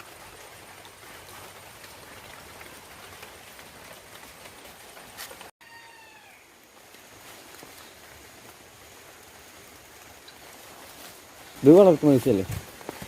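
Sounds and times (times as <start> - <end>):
running water splashing: 0.0 - 5.5, 6.6 - 13.0
animal call falling in pitch: 5.6 - 6.5.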